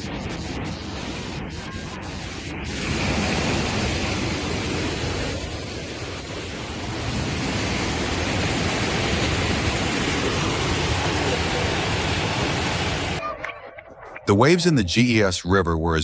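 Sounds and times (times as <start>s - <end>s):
floodwater rushing: 0.0s - 13.2s.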